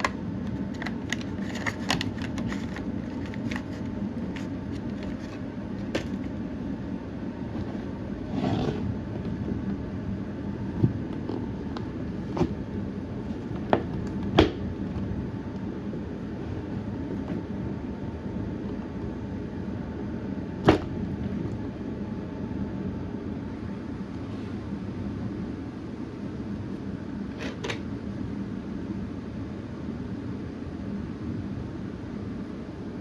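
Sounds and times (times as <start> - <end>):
plastic packaging rustling: 0.0 - 6.4
steady low hum: 0.0 - 33.0.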